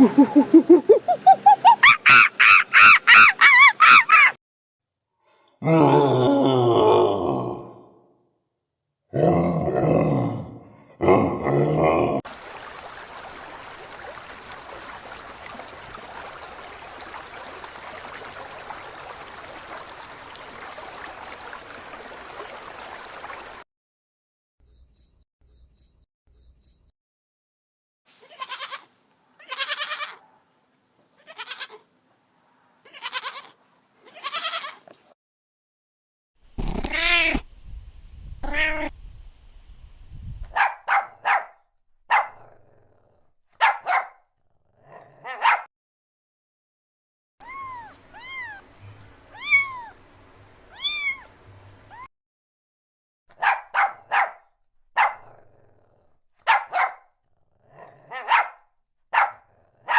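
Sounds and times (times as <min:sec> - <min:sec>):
animal calls rising and falling: 0:00.0 - 0:04.4, 0:36.6 - 0:37.5.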